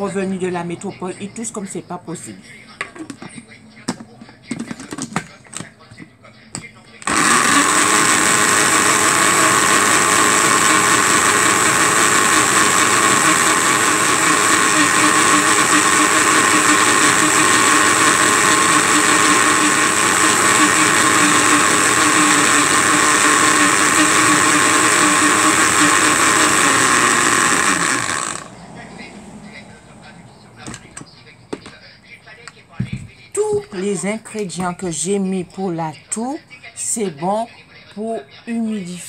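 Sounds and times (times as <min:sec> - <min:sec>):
electric blender running: 0:07.0 - 0:28.8.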